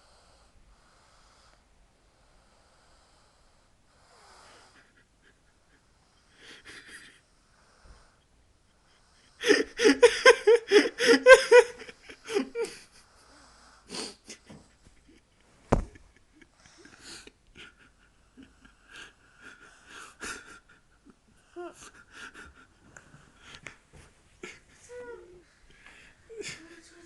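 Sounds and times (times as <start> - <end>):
faint breaths: 0.0 - 10.0, 10.7 - 27.0
person's wheezy vocal sounds: 9.4 - 14.5.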